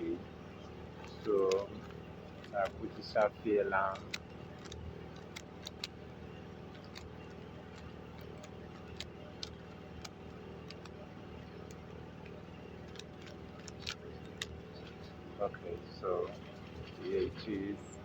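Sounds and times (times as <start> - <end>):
steady low hum: 0.0 - 18.0
puzzle cube clicking: 3.9 - 6.0, 7.7 - 11.0, 12.8 - 15.0.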